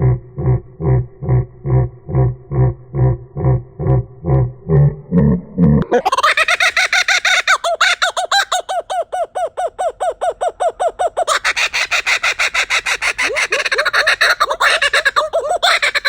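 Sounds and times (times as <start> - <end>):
kookaburra laughing call: 5.8 - 16.0.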